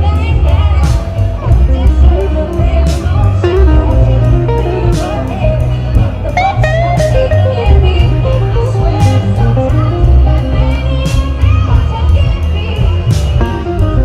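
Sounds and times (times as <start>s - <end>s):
bass guitar: 0.0s - 14.0s
electric guitar: 0.0s - 14.0s
steady drum beat: 0.0s - 14.0s
sliding guitar notes: 1.4s - 10.9s, 13.3s - 14.0s.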